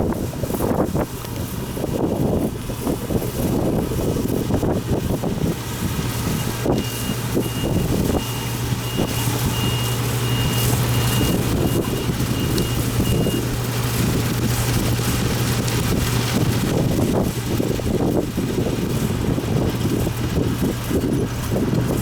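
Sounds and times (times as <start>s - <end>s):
engine humming: 0.0s - 22.0s
reversing beeper: 6.3s - 13.5s.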